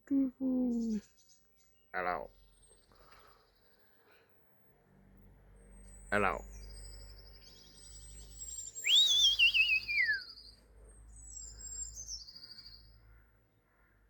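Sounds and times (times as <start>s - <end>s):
high trilled bird whistles: 8.7s - 10.4s
magpie warbling call: 8.8s - 10.2s.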